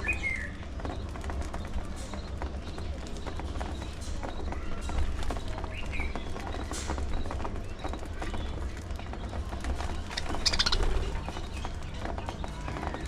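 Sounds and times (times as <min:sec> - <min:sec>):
budgerigars pecking food: 0:00.0 - 0:13.0
budgerigars chirping and chattering: 0:09.6 - 0:12.9.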